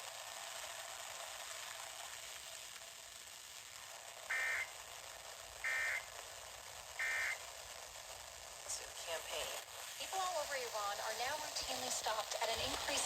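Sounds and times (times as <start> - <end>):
radio hiss: 0.0 - 13.0
buzzy digital tone blasts: 7.0 - 7.4.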